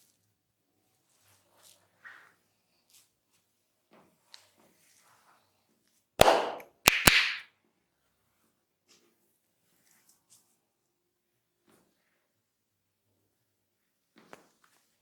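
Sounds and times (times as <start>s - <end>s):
sharp hand slaps: 6.2s - 7.4s.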